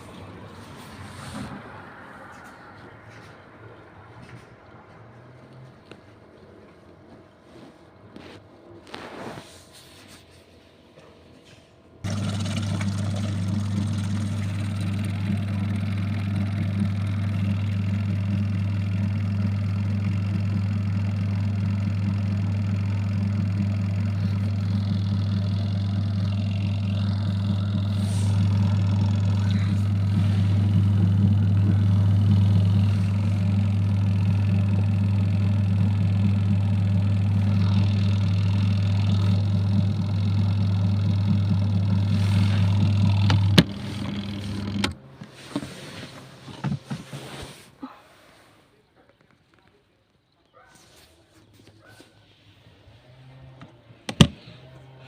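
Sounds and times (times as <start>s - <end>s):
washing machine motor humming: 12.0s - 47.0s, 53.2s - 55.0s.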